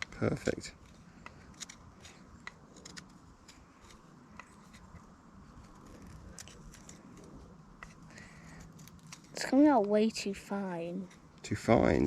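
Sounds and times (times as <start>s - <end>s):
knife scraping wood: 0.8s - 9.5s.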